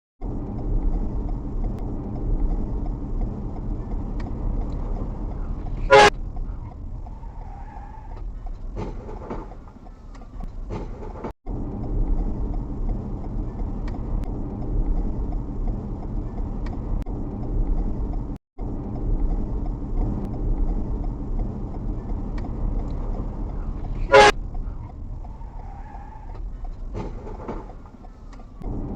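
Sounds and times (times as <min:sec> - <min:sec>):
low rumbling noise: 0:00.2 - 0:28.9
horn toot: 0:05.8 - 0:06.2, 0:24.0 - 0:24.4.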